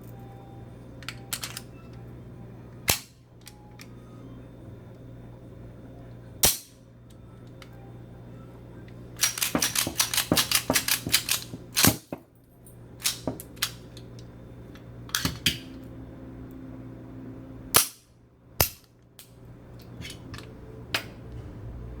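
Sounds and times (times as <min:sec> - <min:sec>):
pistol parts clicking and snapping: 0:01.0 - 0:01.7, 0:09.2 - 0:12.1, 0:13.0 - 0:13.8.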